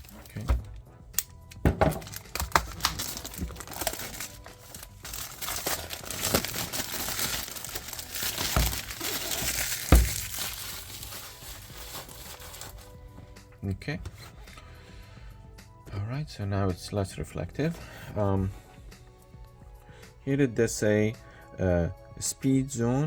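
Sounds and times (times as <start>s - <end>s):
plastic wrapping crinkling: 0.0s - 0.5s, 1.9s - 13.0s
handling knocks: 8.4s - 10.6s.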